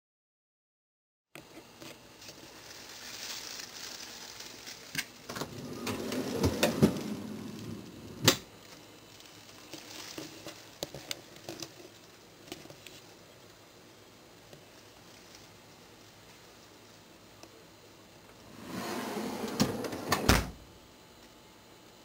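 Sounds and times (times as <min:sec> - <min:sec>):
drawer rumbling slide: 0:05.3 - 0:08.4, 0:18.5 - 0:20.5.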